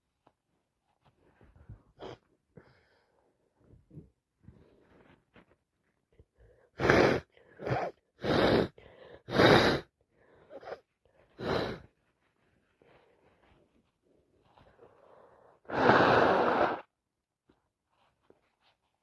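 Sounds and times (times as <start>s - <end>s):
person sneezing: 9.3s - 9.9s.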